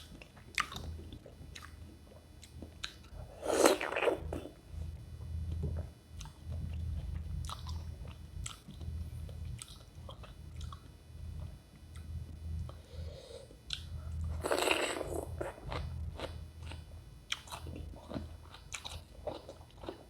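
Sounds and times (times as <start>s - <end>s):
chewing with wet clicks: 0.0s - 3.2s, 7.4s - 8.9s, 9.5s - 10.9s, 13.7s - 13.9s, 15.7s - 20.0s.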